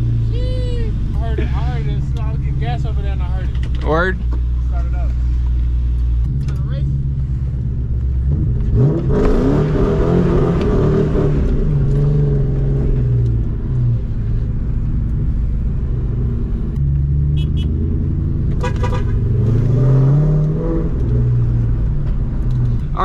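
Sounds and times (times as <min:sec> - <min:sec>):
car engine accelerating: 0:00.0 - 0:23.0.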